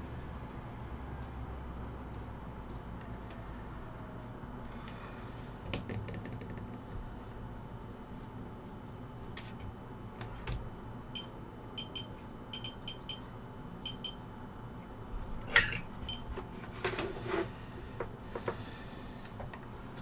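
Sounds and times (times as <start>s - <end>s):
short electronic beeps: 11.2s - 13.2s, 13.8s - 14.2s.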